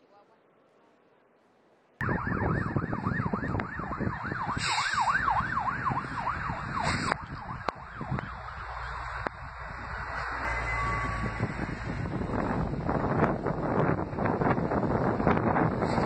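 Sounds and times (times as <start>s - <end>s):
emergency siren yelping: 2.0s - 12.8s.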